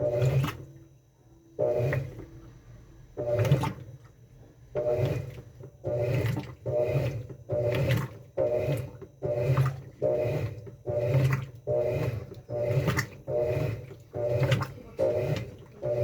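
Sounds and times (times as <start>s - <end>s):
washing machine motor humming: 0.0s - 16.0s
water swishing: 4.8s - 16.0s.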